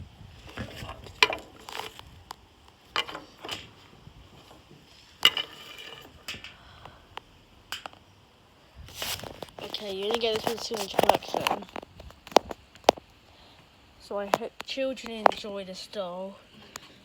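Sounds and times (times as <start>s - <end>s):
packaging rustling: 0.4s - 6.2s, 8.9s - 13.0s.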